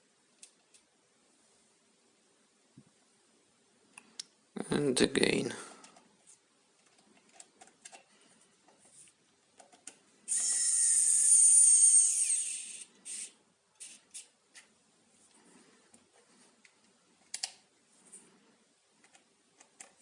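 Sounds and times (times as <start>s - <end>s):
electric screwdriver motor whine: 10.3s - 14.0s.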